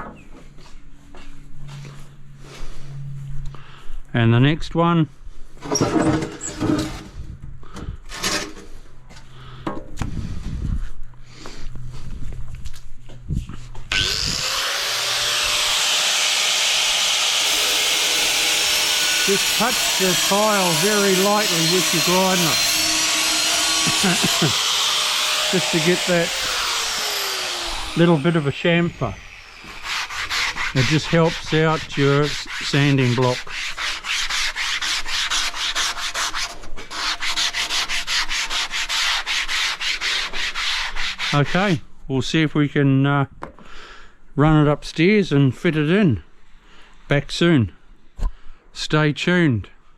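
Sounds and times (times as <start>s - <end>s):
angle grinder whining: 13.9s - 32.0s
sanding block rubbing tile edge: 14.1s - 41.7s.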